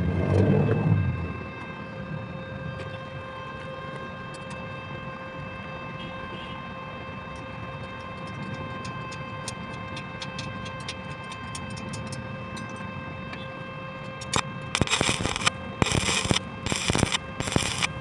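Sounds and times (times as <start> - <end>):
sharp crackling clicks: 14.2 - 17.9
welding arc hum: 14.2 - 18.0.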